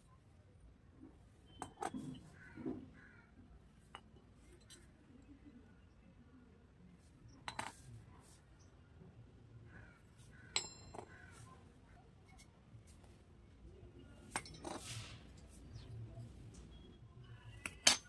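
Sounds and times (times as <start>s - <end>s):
ringing clink: 10.6s - 11.1s
rustling scrape: 14.6s - 15.8s.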